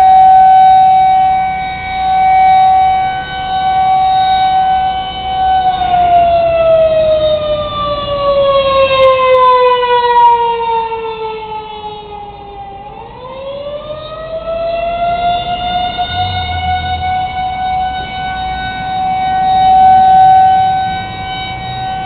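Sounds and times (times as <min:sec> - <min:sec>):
wailing warning siren: 0:00.0 - 0:22.0.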